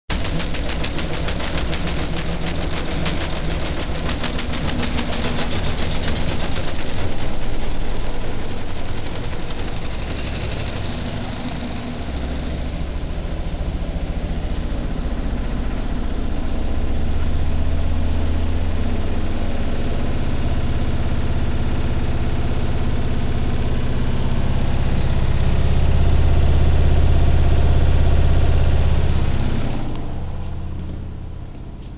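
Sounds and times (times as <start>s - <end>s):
washing machine knocking rattle: 0.1s - 13.2s
washing machine low drone: 0.1s - 31.9s.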